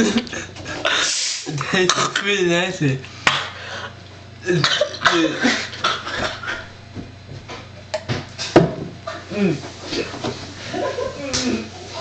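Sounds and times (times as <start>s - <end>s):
person coughing: 4.4s - 6.2s
person clearing throat: 4.4s - 6.4s.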